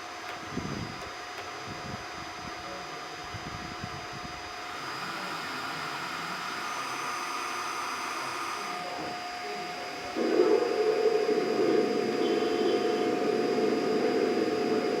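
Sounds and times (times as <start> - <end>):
hydraulic pump whirring: 4.5 - 15.0.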